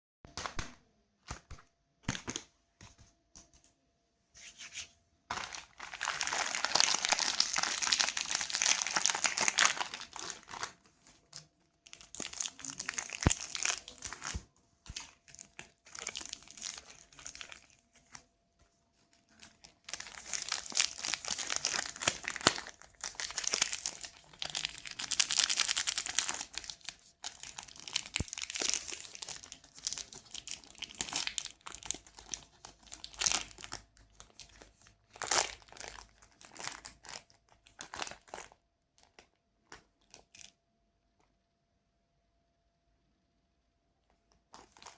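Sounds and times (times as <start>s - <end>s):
wrappers crinkling and tearing: 5.3s - 18.3s, 19.1s - 40.5s, 44.5s - 44.9s.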